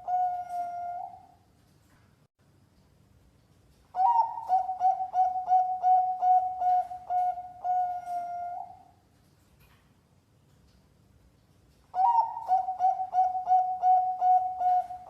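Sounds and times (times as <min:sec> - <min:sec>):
dove cooing: 0:00.0 - 0:01.4, 0:04.0 - 0:09.0, 0:11.9 - 0:15.0.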